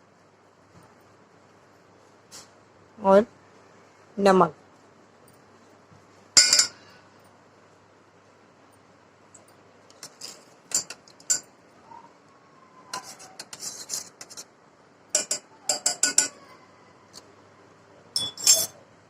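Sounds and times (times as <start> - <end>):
metal spoon clinking on dishes: 6.4 - 6.9, 9.4 - 11.5, 15.1 - 16.4, 18.2 - 18.8.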